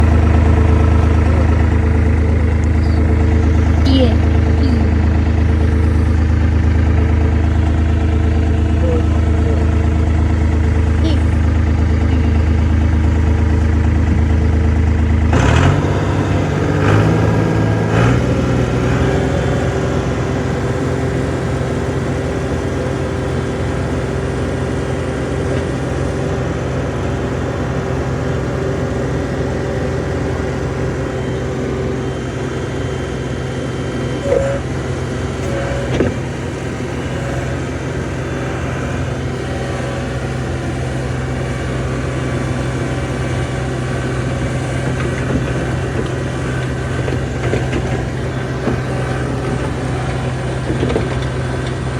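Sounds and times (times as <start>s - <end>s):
diesel engine revving: 0.0s - 51.9s
clanks and rattles: 44.4s - 51.9s.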